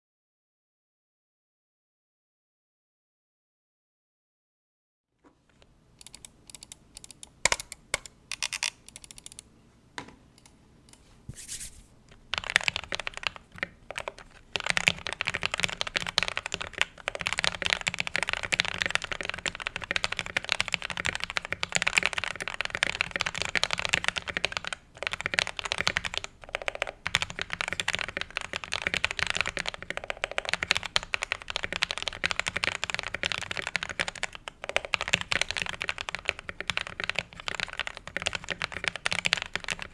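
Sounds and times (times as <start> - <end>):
mechanical keyboard typing: 6.0 - 9.5, 12.3 - 39.9.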